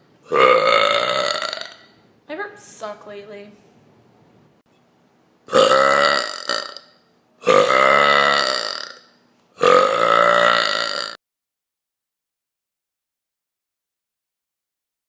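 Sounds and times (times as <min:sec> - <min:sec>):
woman burping loudly: 0:00.2 - 0:02.0, 0:05.5 - 0:11.2.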